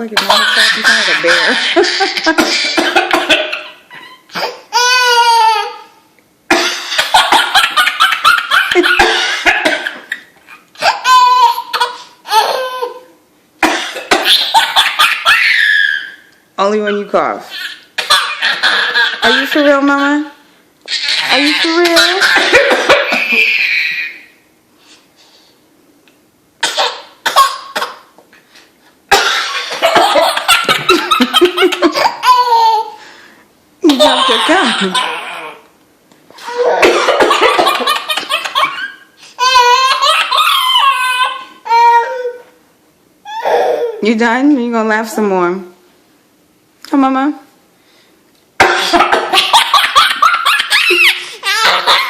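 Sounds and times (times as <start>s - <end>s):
baby laughing: 0.2s - 5.9s, 6.5s - 13.1s, 14.1s - 16.2s, 17.5s - 19.8s, 20.8s - 24.3s, 29.1s - 33.0s, 33.8s - 35.6s, 36.4s - 42.5s, 43.3s - 44.0s, 48.6s - 52.0s
cough: 8.8s - 10.1s, 13.6s - 14.8s, 22.2s - 23.1s, 26.6s - 28.0s, 29.1s - 30.2s.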